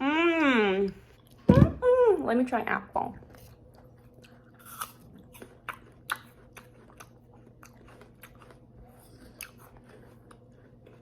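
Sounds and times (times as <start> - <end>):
person crunching an apple: 3.4 - 11.0.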